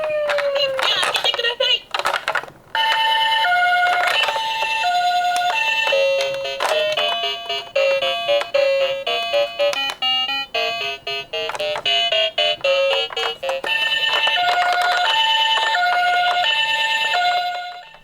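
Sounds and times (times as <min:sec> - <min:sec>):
music with bright stepping notes: 0:02.8 - 0:18.0.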